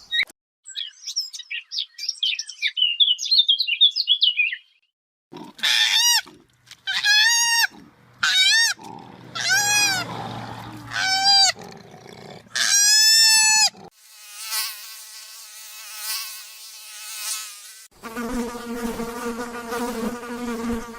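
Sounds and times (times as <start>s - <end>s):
high squealing animal calls: 6.8s - 11.7s, 12.5s - 13.9s
flying insects buzzing: 13.8s - 20.9s.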